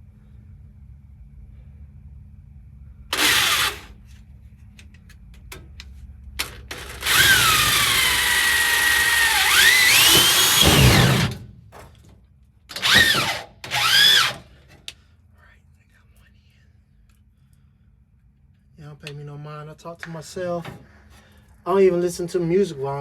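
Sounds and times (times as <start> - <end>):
power drill driving screws into metal: 3.1 - 4.0, 6.4 - 11.5, 12.7 - 14.5.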